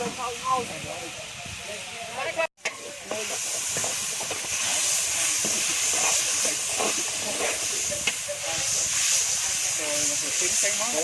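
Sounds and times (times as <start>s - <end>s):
chicken sizzling in a pan: 0.0s - 11.0s.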